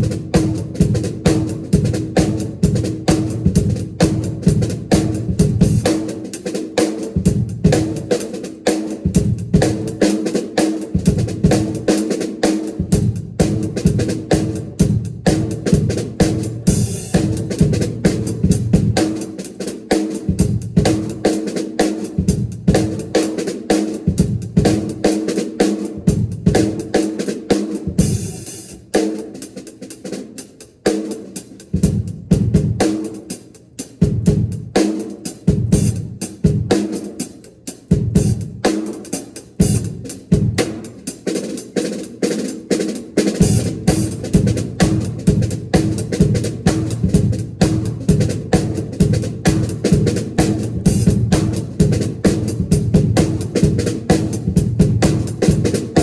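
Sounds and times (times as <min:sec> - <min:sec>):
bass drum: 0:00.0 - 0:06.2, 0:10.9 - 0:11.9, 0:12.8 - 0:19.2, 0:20.2 - 0:21.3, 0:27.9 - 0:28.8, 0:43.3 - 0:56.0
cymbals: 0:00.0 - 0:21.4, 0:22.3 - 0:29.6.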